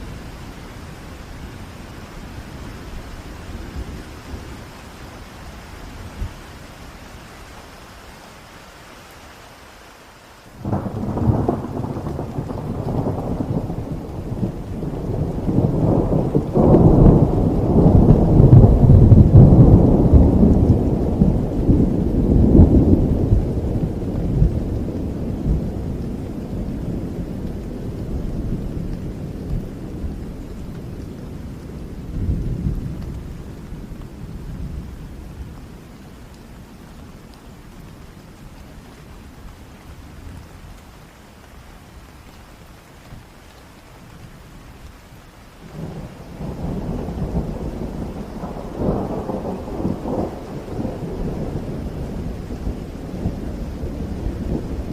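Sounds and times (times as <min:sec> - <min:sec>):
heavy rain falling: 0:00.0 - 0:54.9
thunder rumbling: 0:10.6 - 0:35.9, 0:45.6 - 0:54.9.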